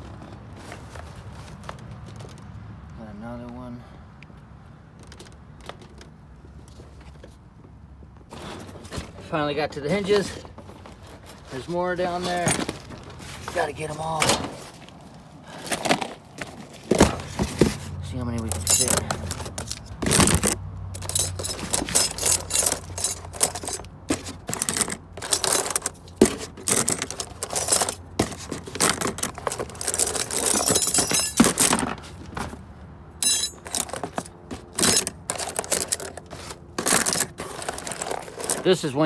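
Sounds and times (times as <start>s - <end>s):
metal hinges clinking into box: 16.9s - 32.0s, 33.2s - 38.9s.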